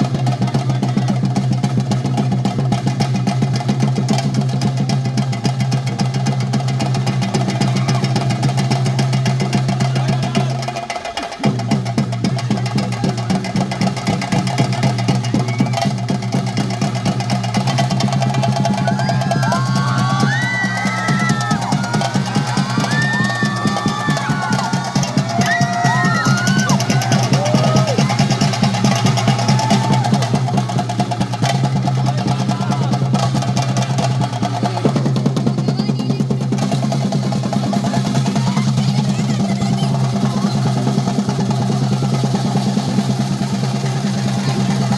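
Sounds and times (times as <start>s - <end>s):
drums beating fast rhythm: 0.0s - 44.9s.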